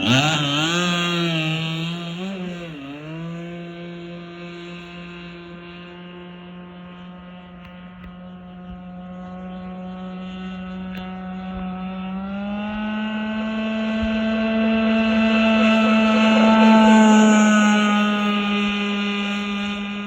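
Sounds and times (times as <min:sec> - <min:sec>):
model speedboat engine running: 0:00.0 - 0:20.0.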